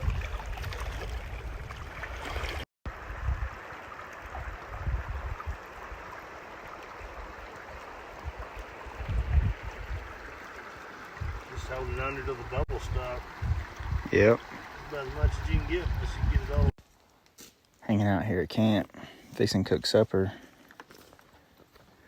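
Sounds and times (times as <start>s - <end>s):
wind buffeting microphone: 0.0s - 3.7s, 4.3s - 6.0s, 8.2s - 10.3s, 11.1s - 16.7s
flowing stream water: 0.0s - 16.8s.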